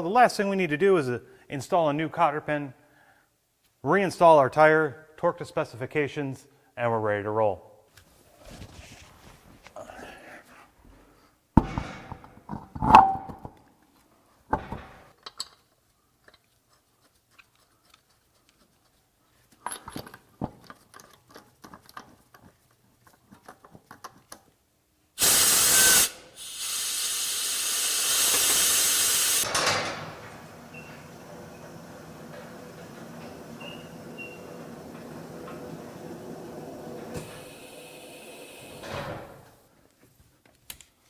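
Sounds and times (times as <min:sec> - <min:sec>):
pneumatic tool air hissing: 0:25.2 - 0:29.5.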